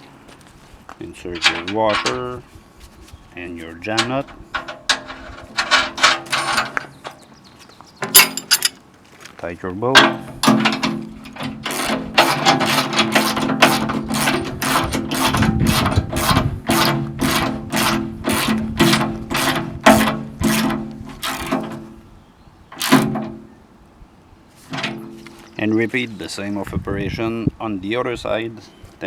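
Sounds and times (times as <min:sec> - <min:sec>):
ratchet wrench ratcheting: 0:11.3 - 0:21.7, 0:22.8 - 0:23.2.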